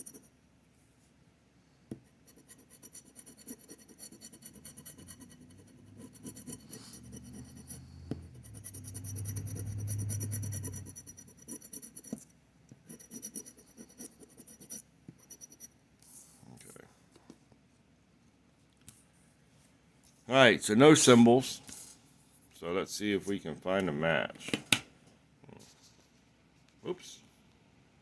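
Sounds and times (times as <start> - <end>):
scratch card coating scraped: 2.3 - 12.3, 12.9 - 15.6
low hum: 7.0 - 11.3.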